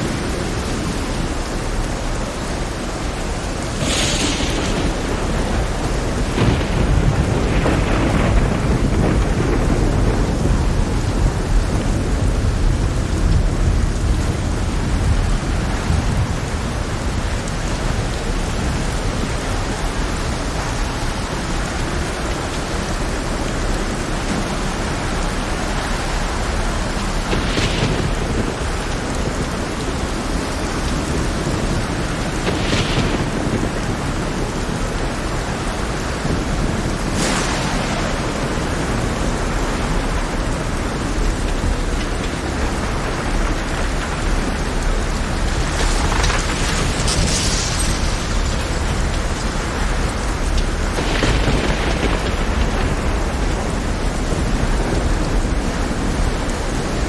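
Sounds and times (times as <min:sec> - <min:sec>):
deep rumble of rough sea: 0:00.0 - 0:57.0
heavy rain hissing: 0:00.0 - 0:57.0
surges of hissing noise: 0:01.1 - 0:08.0, 0:35.9 - 0:53.2.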